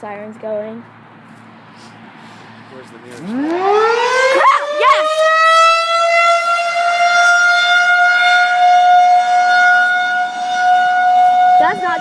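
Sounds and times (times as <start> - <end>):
outdoor warning siren steady tone: 3.2 - 12.0.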